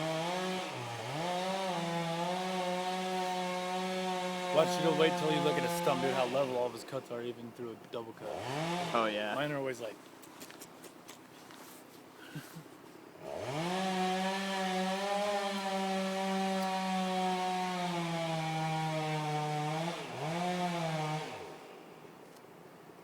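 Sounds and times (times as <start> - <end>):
chainsaw revving and cutting: 0.0 - 6.8, 8.2 - 9.4, 13.2 - 21.8.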